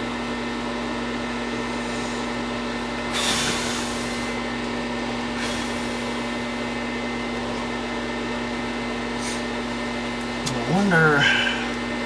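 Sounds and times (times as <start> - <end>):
fan noise: 0.0 - 12.0
welder electrical hum: 0.0 - 12.0.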